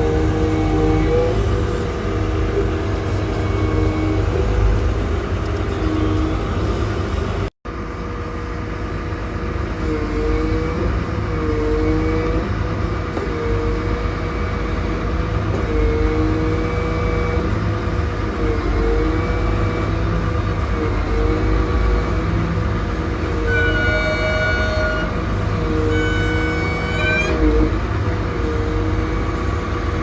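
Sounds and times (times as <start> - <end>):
wavering whining tone: 0.0 - 7.5, 18.4 - 30.0
engine low rumble: 0.0 - 30.0.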